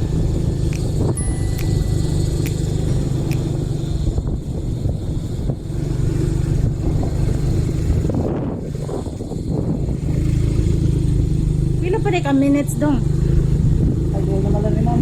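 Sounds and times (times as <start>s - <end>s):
road rumble: 0.0s - 15.0s
vehicle engine running: 0.0s - 15.0s.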